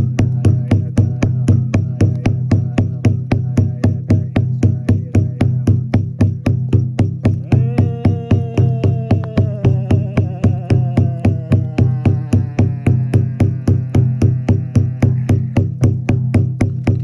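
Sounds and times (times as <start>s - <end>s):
fast percussive beat: 0.0s - 17.0s.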